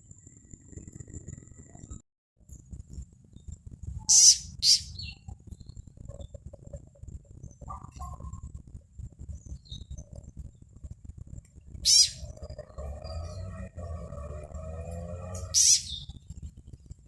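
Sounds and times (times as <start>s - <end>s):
shrill frog calls: 4.0s - 5.3s, 11.8s - 13.2s, 15.3s - 16.1s
frog distress cry: 11.8s - 12.3s, 15.4s - 15.9s.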